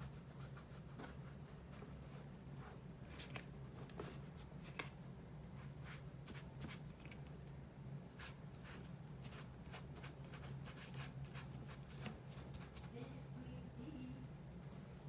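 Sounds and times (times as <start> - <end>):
paint brush scratching: 0.0 - 2.2, 8.1 - 12.9
low steady hum: 0.0 - 15.0.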